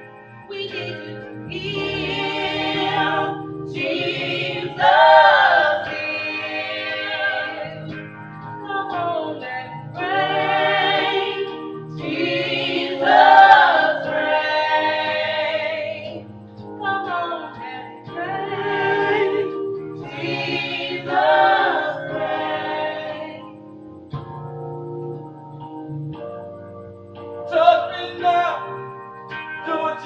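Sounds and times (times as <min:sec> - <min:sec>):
choir singing: 0:00.5 - 0:08.0, 0:08.8 - 0:16.2, 0:16.9 - 0:23.5.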